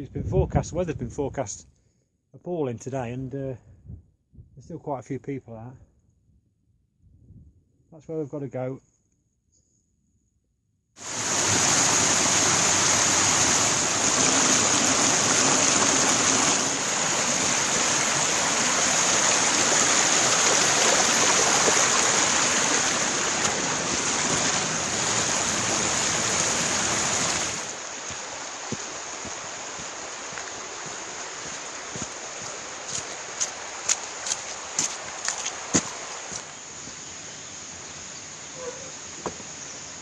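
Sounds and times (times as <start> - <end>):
stream rushing: 11.0 - 36.6
steady hiss: 11.0 - 40.0.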